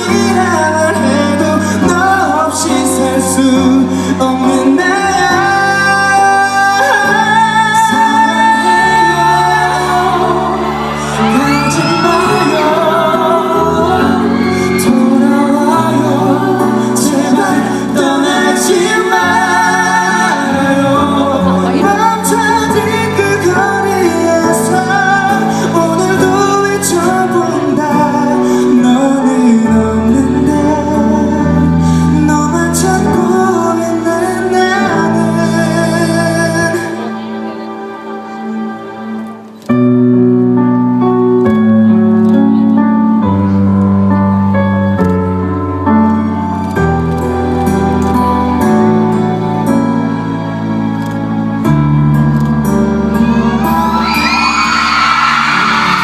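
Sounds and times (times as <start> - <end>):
male voices singing with vibrato: 0.0 - 37.0
pop instrumental backing track: 0.0 - 56.0.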